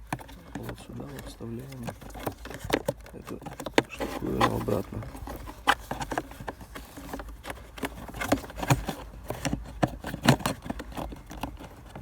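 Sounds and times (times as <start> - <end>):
plastic clicks and knocks: 0.0 - 12.0.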